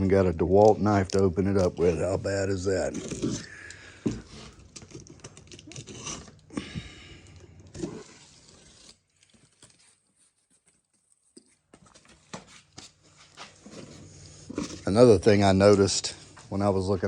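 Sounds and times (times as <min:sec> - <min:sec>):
cardboard scraping and rustling: 0:01.8 - 0:06.4, 0:07.8 - 0:10.6, 0:11.8 - 0:15.9
knife cutting cardboard box: 0:02.7 - 0:03.5, 0:04.1 - 0:06.4, 0:07.8 - 0:09.1.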